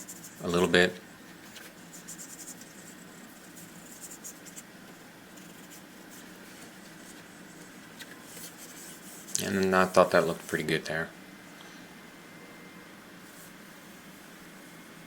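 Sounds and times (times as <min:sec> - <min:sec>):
drawing stick scratching on paper: 0:00.0 - 0:00.7, 0:01.8 - 0:04.7, 0:05.3 - 0:06.3, 0:08.2 - 0:09.4.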